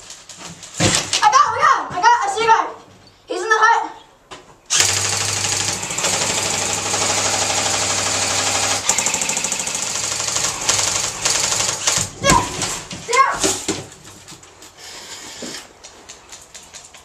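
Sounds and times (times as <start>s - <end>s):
airsoft gun firing full-auto: 4.7s - 12.1s.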